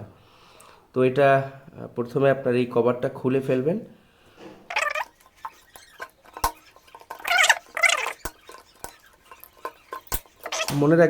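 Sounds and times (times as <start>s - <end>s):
cat meowing: 4.7s - 5.1s.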